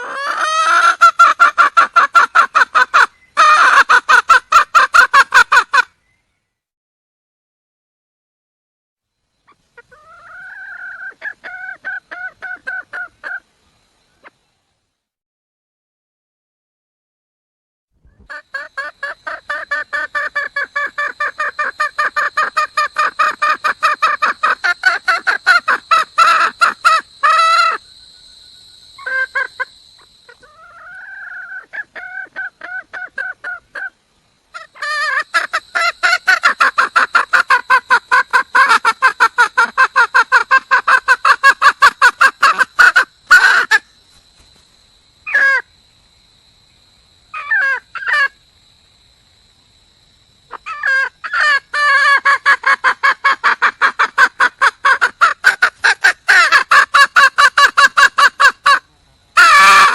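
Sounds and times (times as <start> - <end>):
hen cackling: 0.0 - 5.9, 9.8 - 13.4, 18.1 - 27.8, 29.0 - 43.9, 45.3 - 45.7, 47.3 - 48.4, 50.5 - 59.9
wavering bird calls: 18.2 - 44.0.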